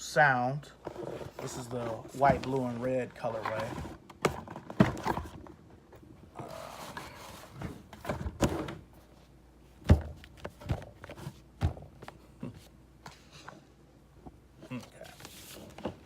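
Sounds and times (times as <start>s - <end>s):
cardboard box rustling: 0.9s - 5.5s
dull knocks and thuds: 9.8s - 11.0s.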